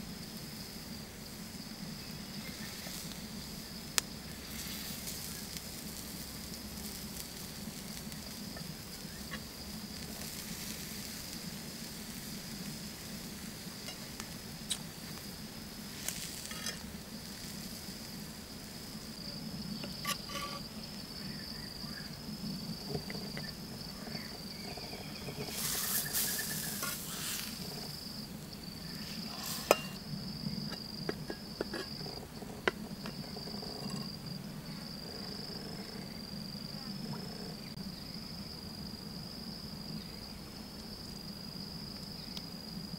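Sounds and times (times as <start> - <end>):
liver sizzling on hot rock: 0.1 - 35.8
sharp pops and crackles: 2.4 - 18.4, 22.3 - 34.2.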